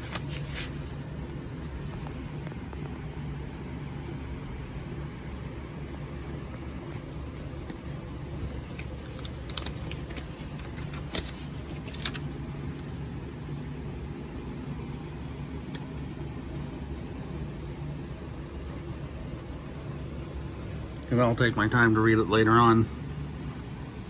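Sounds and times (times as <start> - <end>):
paper rustling and clicking: 0.0 - 1.0, 6.9 - 13.1, 13.9 - 16.1
steady low hum: 0.0 - 24.0.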